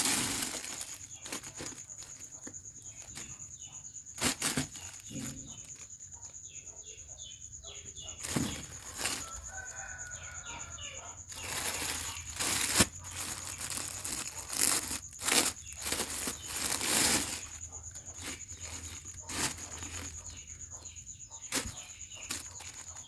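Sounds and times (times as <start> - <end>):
packaging rustling and crinkling: 0.0 - 3.4, 4.2 - 5.8, 8.2 - 10.2, 11.3 - 20.5, 21.5 - 23.0.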